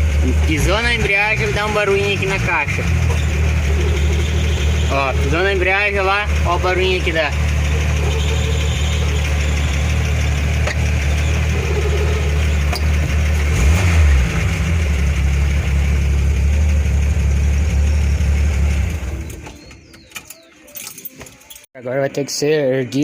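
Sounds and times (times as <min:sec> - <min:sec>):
engine idling: 0:00.0 - 0:20.1
clutch bearing whirring: 0:00.0 - 0:20.4.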